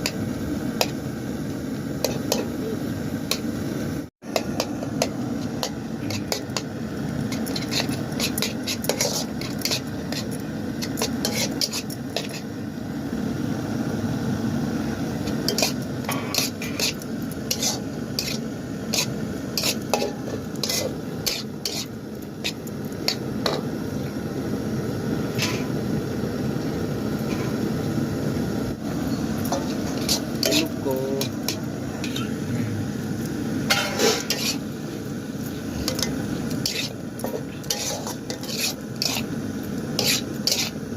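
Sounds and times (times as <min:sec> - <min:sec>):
frying sizzle: 0:00.0 - 0:40.9
metal spoon scraping a pan: 0:02.0 - 0:03.4, 0:04.3 - 0:12.6, 0:15.2 - 0:23.8, 0:25.4 - 0:25.8, 0:27.2 - 0:27.6, 0:29.1 - 0:32.4, 0:33.7 - 0:34.8, 0:35.4 - 0:40.9.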